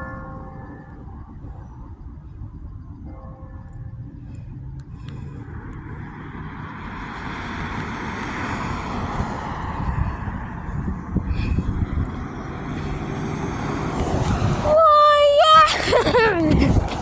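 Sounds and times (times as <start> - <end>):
passing vehicle rushing: 3.8 - 17.0.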